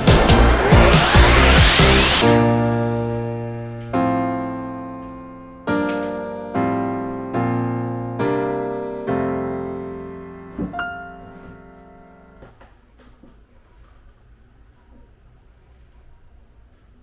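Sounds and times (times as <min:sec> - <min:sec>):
slow piano chords: 0:02.2 - 0:12.5.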